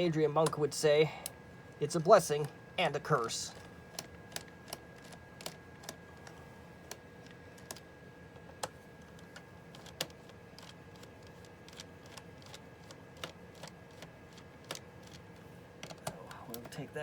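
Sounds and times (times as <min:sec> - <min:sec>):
faint high whine: 0:00.0 - 0:14.4
screwdriver clicking on plastic case: 0:15.8 - 0:16.7.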